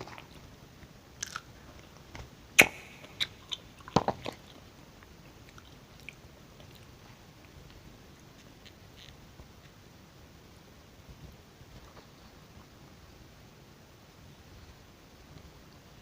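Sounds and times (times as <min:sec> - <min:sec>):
wet chewing clicks and smacks: 0:01.2 - 0:01.5, 0:02.6 - 0:07.6.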